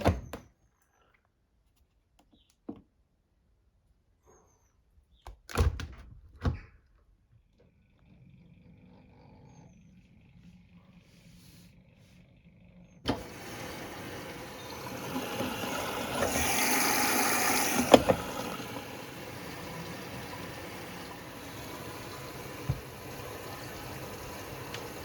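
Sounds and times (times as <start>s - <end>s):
washing machine click: 13.1s - 25.0s
water rushing into washing machine: 13.1s - 25.0s.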